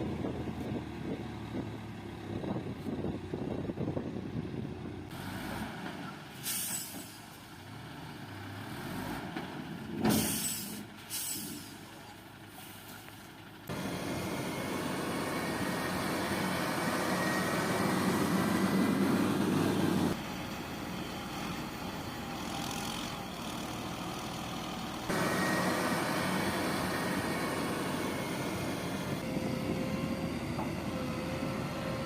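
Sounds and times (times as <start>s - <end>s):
truck air-brake hisses: 6.4s - 7.4s, 10.0s - 11.9s
truck engine running: 13.2s - 32.0s.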